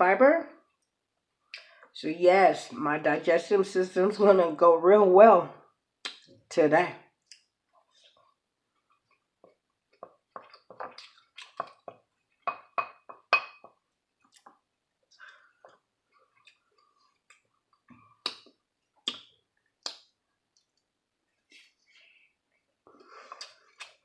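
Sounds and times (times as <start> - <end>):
chewing clicks and smacks: 16.2 - 20.9, 23.4 - 24.0.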